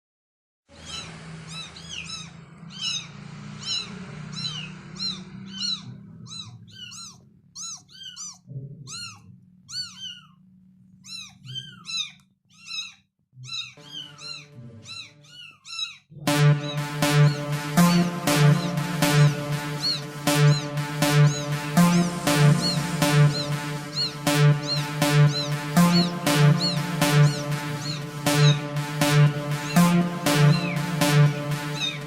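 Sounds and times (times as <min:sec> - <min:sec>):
kitten mewing: 0:05.6 - 0:10.4.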